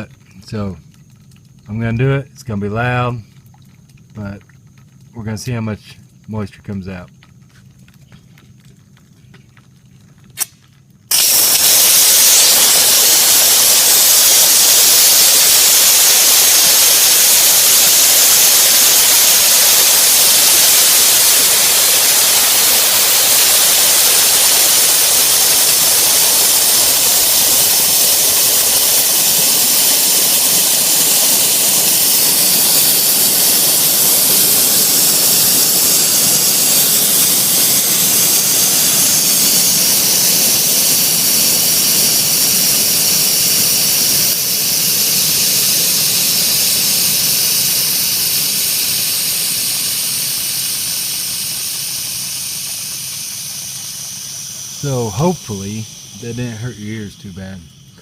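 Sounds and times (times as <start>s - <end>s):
valve click: 10.4s - 55.0s
compressed air hissing from valve: 11.1s - 58.0s.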